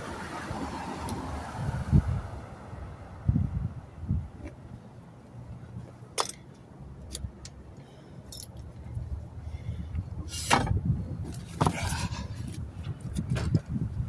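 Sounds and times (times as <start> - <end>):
metal clinking and clanking: 6.1 - 7.3.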